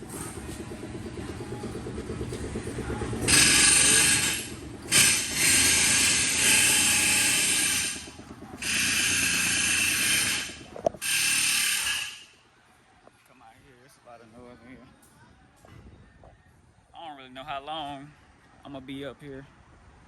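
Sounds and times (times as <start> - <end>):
power tool hissing bursts: 3.3 - 12.3.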